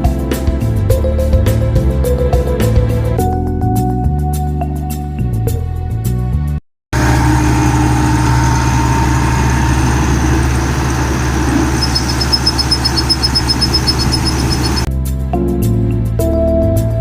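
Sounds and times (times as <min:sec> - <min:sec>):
harvester engine humming: 0:07.0 - 0:14.9
rapid high ticking: 0:09.8 - 0:14.9.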